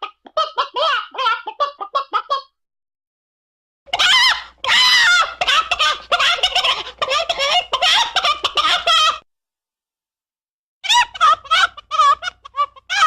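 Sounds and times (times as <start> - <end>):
fowl clucking and gobbling: 0.0 - 2.5, 4.0 - 9.2.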